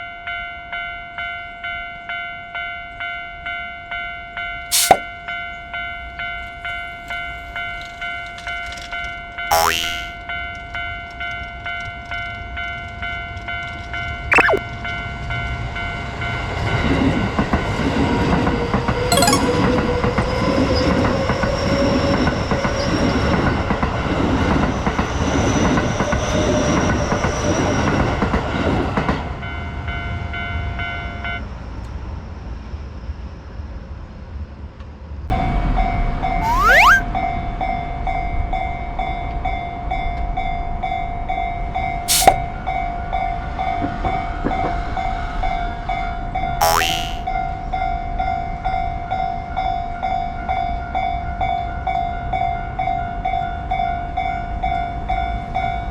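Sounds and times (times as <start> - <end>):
short rising tone: 14.3 - 14.6, 36.4 - 37.1.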